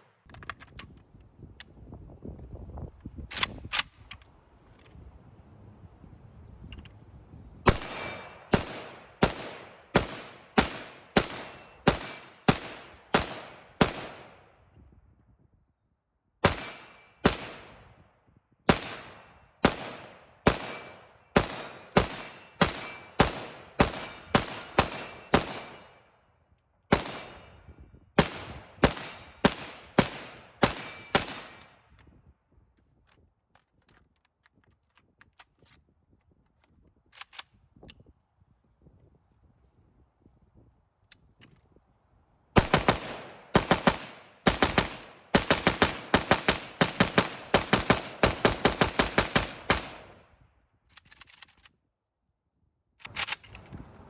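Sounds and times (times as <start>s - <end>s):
rifle firing single shots: 7.7s - 14.5s, 16.4s - 17.9s, 18.7s - 26.1s, 26.9s - 31.8s, 42.6s - 50.3s.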